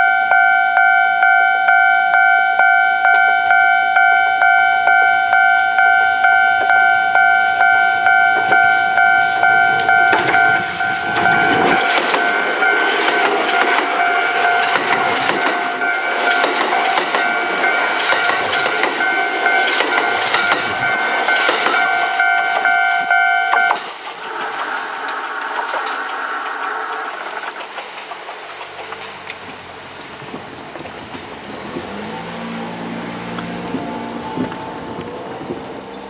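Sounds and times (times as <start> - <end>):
level crossing warning bell: 0.0 - 24.0
electric trains passing: 0.0 - 36.0
wheels clattering on rail joints: 2.7 - 36.0.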